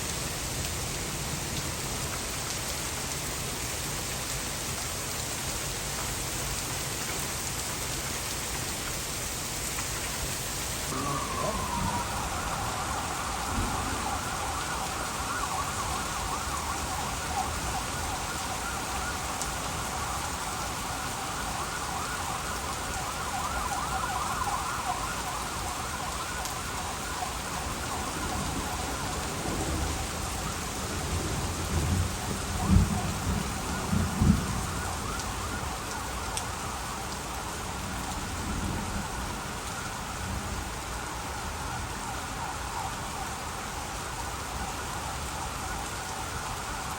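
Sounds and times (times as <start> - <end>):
heavy rain pouring: 0.0 - 46.9
low thunder rumbles: 10.9 - 35.8.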